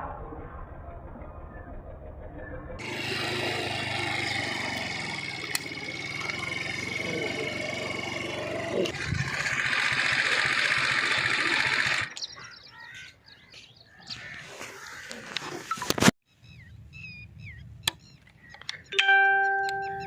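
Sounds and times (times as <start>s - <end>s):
small birds chirping: 2.8s - 9.0s, 10.4s - 20.0s.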